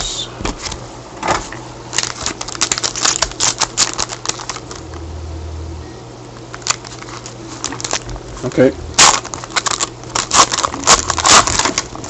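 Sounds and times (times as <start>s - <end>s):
low hum: 3.9s - 12.0s
cards being shuffled: 6.6s - 12.0s.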